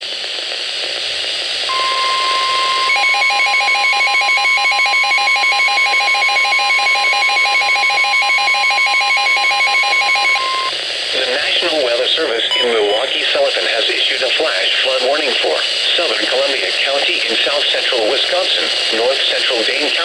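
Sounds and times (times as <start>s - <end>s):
radio static hiss: 0.0s - 3.0s, 10.4s - 20.0s
rapidly pulsing beep: 1.7s - 10.7s, 12.5s - 13.1s
steady alert tone: 12.5s - 13.1s.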